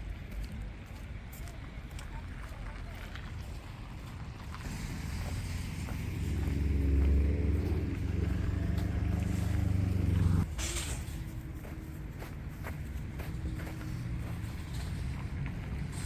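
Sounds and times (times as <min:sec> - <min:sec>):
vehicle engine humming: 0:00.0 - 0:16.0
brief hiss: 0:10.5 - 0:11.2.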